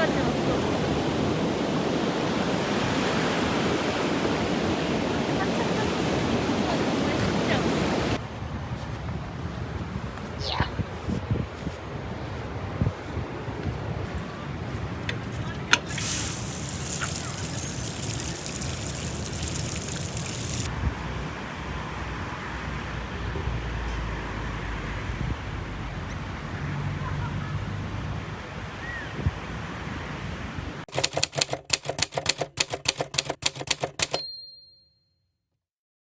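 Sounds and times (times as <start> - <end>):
ocean surf on a beach: 0.0 - 8.2
rapid sharp clicks: 30.9 - 34.2.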